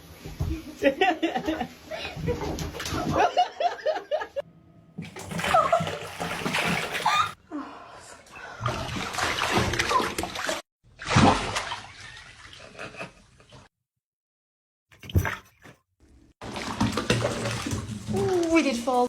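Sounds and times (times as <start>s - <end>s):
water splashing: 5.0s - 7.4s, 8.5s - 12.7s, 16.4s - 19.0s.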